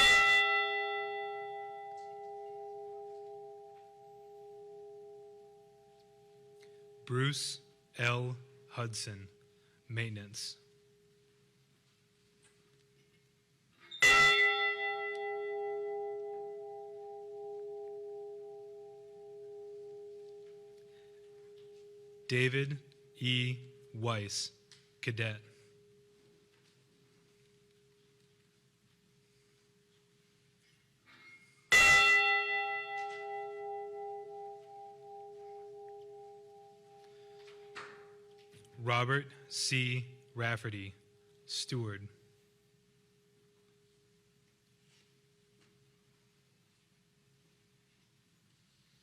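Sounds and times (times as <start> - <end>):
large bell ringing: 0.0 - 9.1, 14.0 - 24.4, 31.2 - 40.3.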